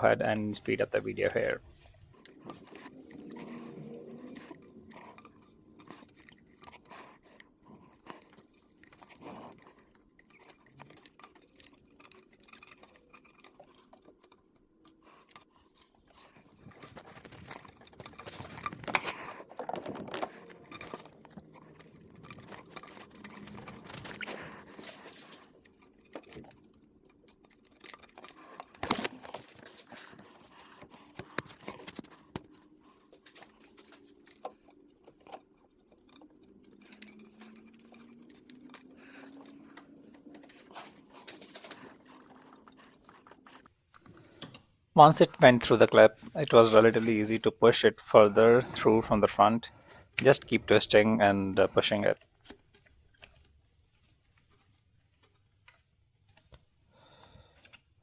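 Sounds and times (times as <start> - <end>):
rubber hose crunching and rubbing: 0.0 - 44.2.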